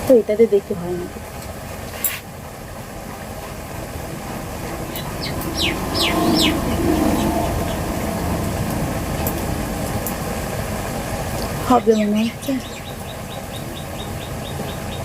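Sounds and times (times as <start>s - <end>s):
steady mechanical hum: 0.0s - 15.0s
bird whistling falling notes: 4.9s - 7.8s.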